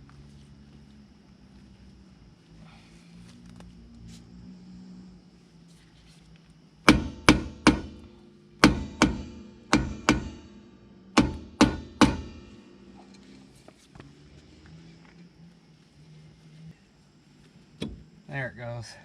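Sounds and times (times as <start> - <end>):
hammer striking metal hub: 6.9 - 13.3.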